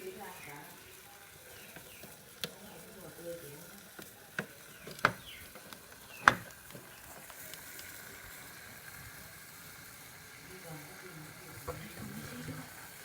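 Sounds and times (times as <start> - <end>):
faint sizzle: 0.0 - 13.0
metal utensil knocking on pot: 4.4 - 5.3, 6.2 - 6.5.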